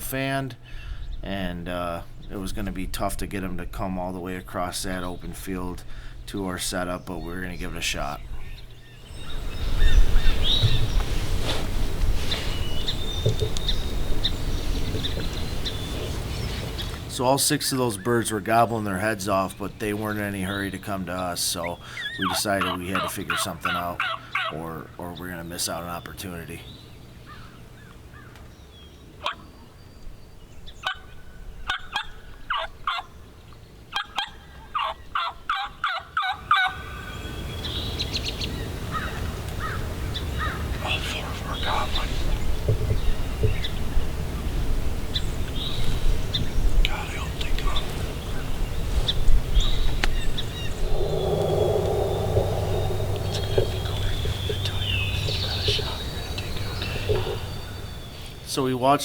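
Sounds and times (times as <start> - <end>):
songbirds chirping: 0.0 - 35.2, 36.6 - 59.0
turkeys gobbling: 21.9 - 24.6, 34.0 - 37.1
steady low rumble: 50.2 - 58.1.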